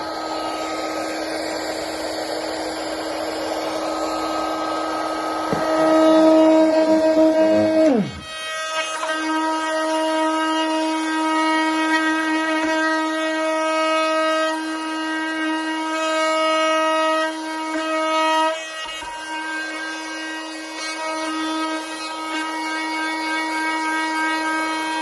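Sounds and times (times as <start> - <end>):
oscillating multi-tool buzzing: 0.0 - 25.0
low knock: 5.4 - 6.2.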